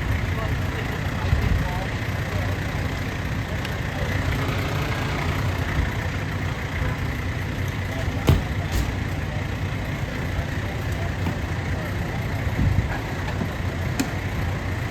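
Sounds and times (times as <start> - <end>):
diesel engine running: 0.0 - 14.9.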